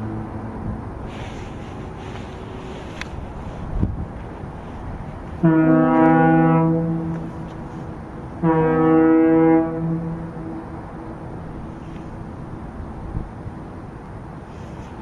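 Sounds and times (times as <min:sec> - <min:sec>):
ship's horn long blasts: 0:05.3 - 0:11.9.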